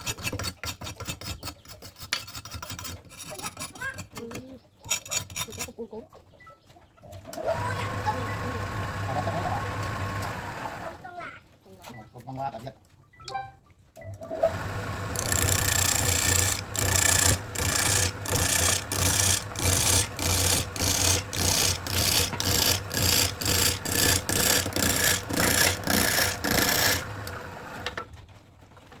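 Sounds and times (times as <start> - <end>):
hand tool rasping: 0.0 - 5.7, 14.4 - 28.0.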